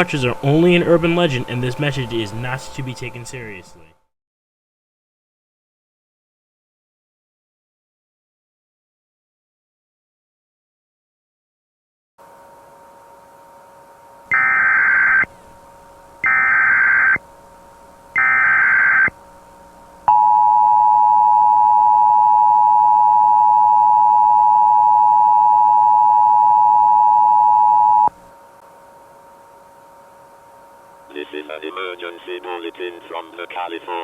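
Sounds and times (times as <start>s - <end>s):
digital data tone bursts: 14.3s - 15.4s, 16.2s - 17.2s, 18.2s - 19.2s
two-tone attention signal: 16.2s - 17.2s, 18.2s - 19.2s, 20.1s - 28.1s.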